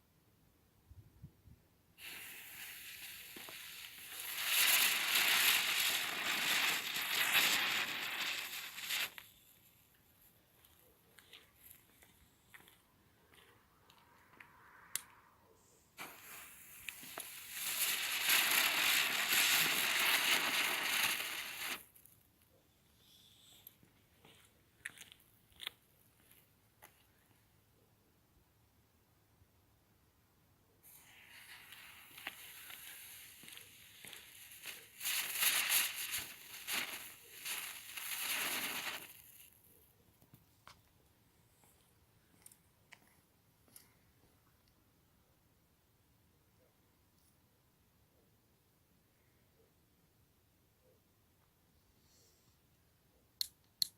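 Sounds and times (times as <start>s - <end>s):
firework fizzing hiss: 2.0s - 9.7s, 16.0s - 22.0s, 30.9s - 39.6s.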